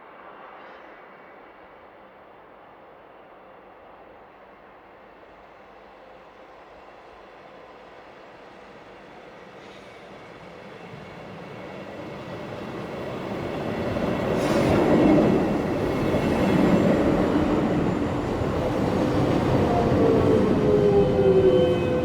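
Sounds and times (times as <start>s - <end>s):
train wheels rumbling on rails: 8.1s - 22.0s.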